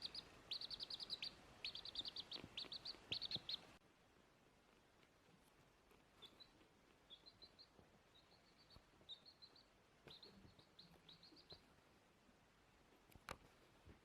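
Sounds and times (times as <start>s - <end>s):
small animal chirping: 0.0s - 3.8s, 6.1s - 11.6s.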